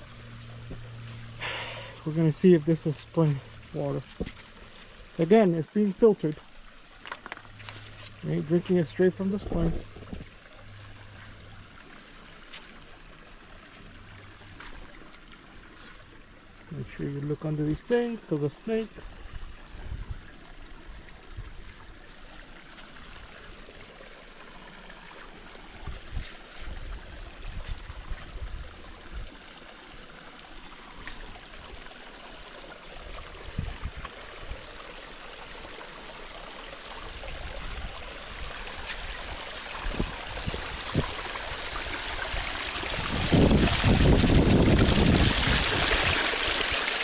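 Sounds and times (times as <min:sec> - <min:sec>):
spring water trickling: 0:00.0 - 0:47.0
wind rumbling on microphone: 0:09.3 - 0:10.4, 0:19.2 - 0:21.8, 0:25.7 - 0:29.4, 0:33.1 - 0:34.7, 0:37.1 - 0:46.4.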